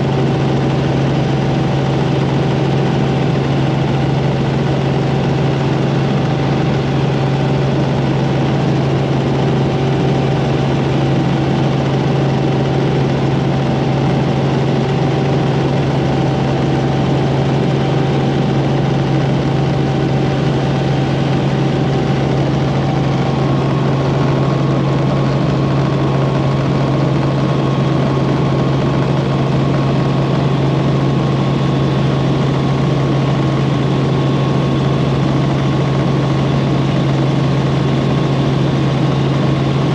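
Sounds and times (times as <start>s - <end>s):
helicopter engine and rotor drone: 0.0s - 39.9s.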